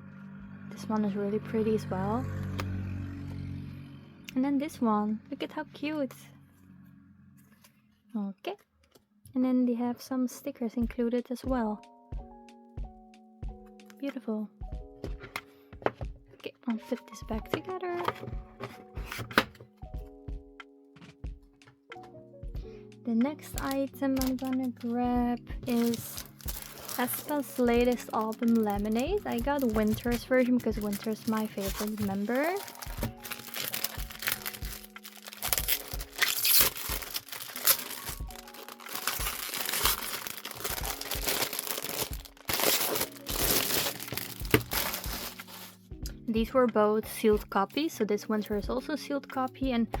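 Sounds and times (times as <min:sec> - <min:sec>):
soft background music: 0:00.0 - 0:50.0
plastic cd case clicks and knocks: 0:15.0 - 0:16.1, 0:17.4 - 0:19.7, 0:44.1 - 0:45.2
plastic shrink-wrap crinkling: 0:23.6 - 0:24.8, 0:25.6 - 0:45.8.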